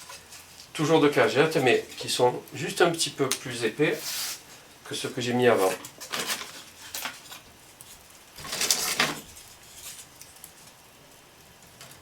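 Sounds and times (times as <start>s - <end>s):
wood scraping rustle: 0.0s - 2.4s, 3.9s - 4.7s, 5.4s - 10.8s.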